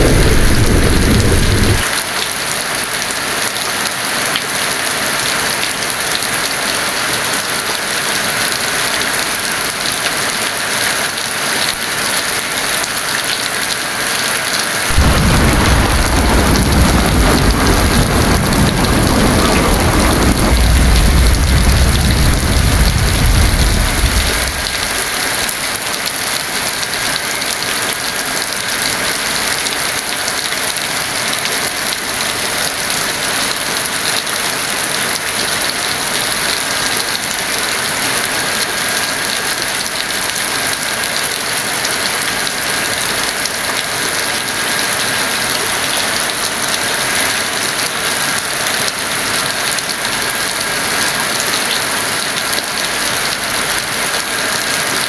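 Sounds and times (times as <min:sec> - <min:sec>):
deep thunder rumble: 0:00.0 - 0:01.9, 0:14.9 - 0:25.2
heavy rain hissing: 0:00.0 - 0:03.2, 0:06.9 - 0:55.0.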